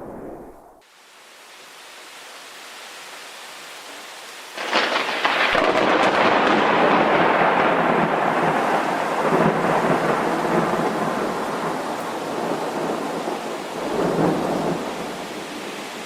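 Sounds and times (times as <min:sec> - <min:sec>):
thunder crack and rumble: 0:00.0 - 0:00.8, 0:04.6 - 0:15.3
steady rain: 0:00.0 - 0:16.0.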